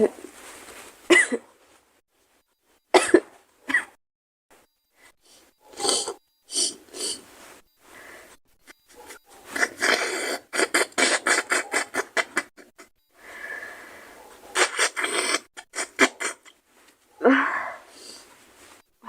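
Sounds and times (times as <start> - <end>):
woman sniffing: 5.0 - 8.4, 9.0 - 12.6, 13.2 - 16.6, 17.2 - 18.3.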